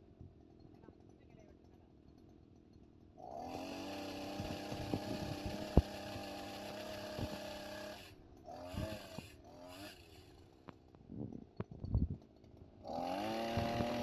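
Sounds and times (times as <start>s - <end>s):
brush cutter engine revving: 3.2s - 10.9s, 12.7s - 14.0s.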